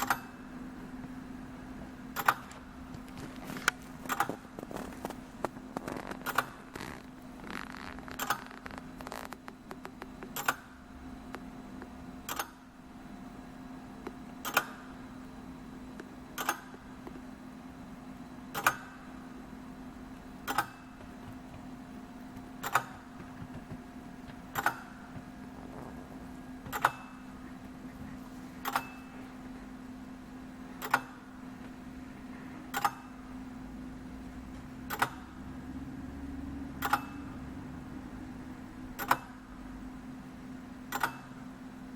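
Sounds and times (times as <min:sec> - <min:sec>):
steady low hum: 0:00.0 - 0:41.9
clock escapement ticking: 0:20.4 - 0:21.1, 0:22.6 - 0:23.4, 0:24.5 - 0:25.0, 0:26.7 - 0:27.3, 0:34.8 - 0:35.4, 0:36.8 - 0:37.3
quick clicks: 0:22.4 - 0:25.3.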